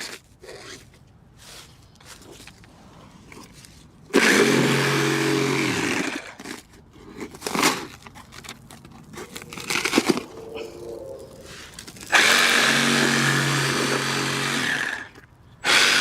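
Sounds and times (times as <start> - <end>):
power tool motor running: 12.1 - 16.0.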